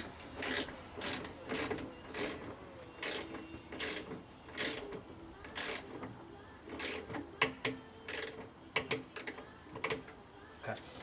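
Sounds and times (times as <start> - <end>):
ratchet wrench clicking: 3.8 - 4.8, 5.5 - 5.9, 6.7 - 10.0.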